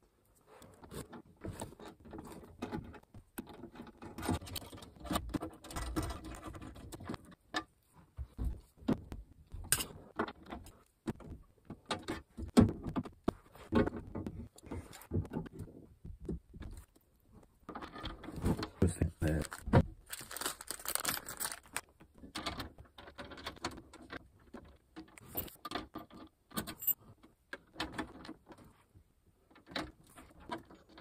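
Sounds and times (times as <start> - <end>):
keys and metal lock clicking: 26.6 - 27.0.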